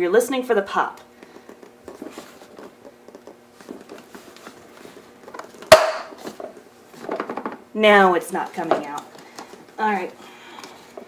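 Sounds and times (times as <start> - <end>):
plastic and fabric handling: 1.2 - 7.6.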